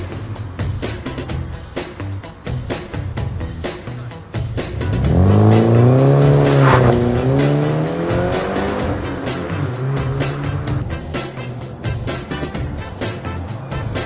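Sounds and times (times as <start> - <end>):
car engine revving: 0.0 - 11.0
background music with beat: 0.0 - 14.0.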